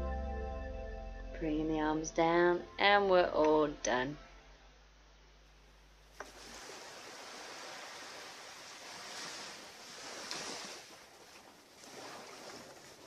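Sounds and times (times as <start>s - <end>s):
surf waves breaking on beach: 6.2s - 13.0s.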